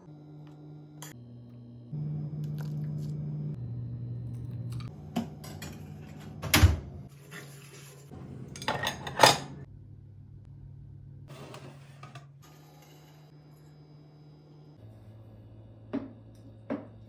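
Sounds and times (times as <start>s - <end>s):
dishes and utensils clattering: 5.1s - 9.7s.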